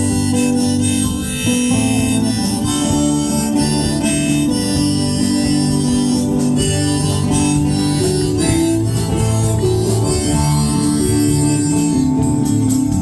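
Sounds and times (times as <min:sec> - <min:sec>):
band accompaniment with guitar: 0:00.0 - 0:13.0
harmonica playing held notes: 0:00.0 - 0:13.0.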